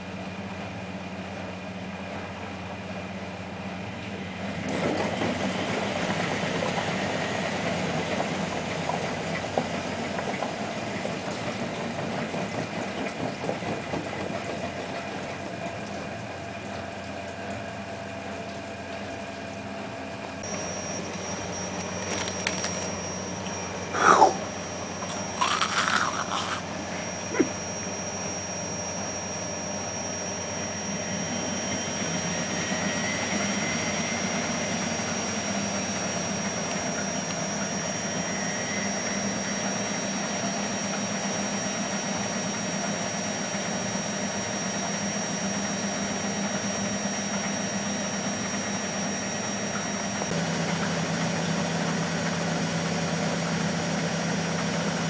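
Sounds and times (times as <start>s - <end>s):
washing machine motor hum: 0.0s - 55.0s
thin high whine: 20.4s - 40.8s.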